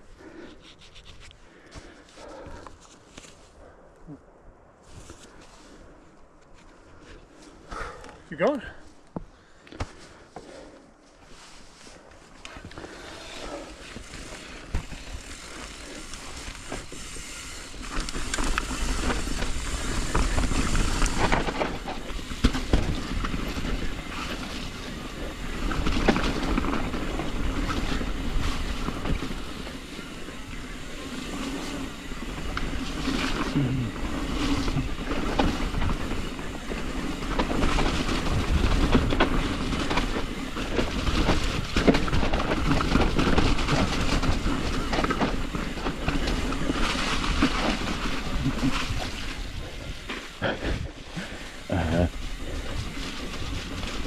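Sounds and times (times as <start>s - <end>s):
bike tyres rumbling over dirt: 8.7s - 54.0s
bike rattling and clattering: 11.3s - 54.0s.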